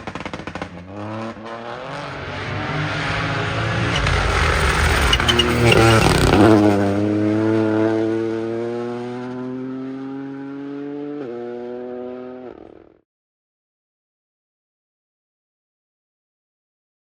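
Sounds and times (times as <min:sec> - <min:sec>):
rally car passing at speed: 0:00.0 - 0:12.9.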